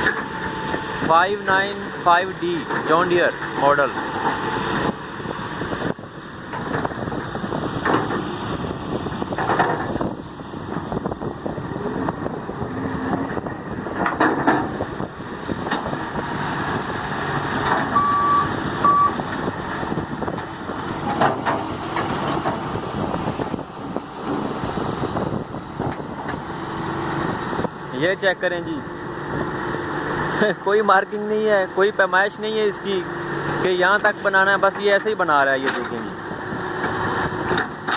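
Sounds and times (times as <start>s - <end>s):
excavator engine running: 0.0s - 37.9s
short beeps: 17.9s - 19.2s.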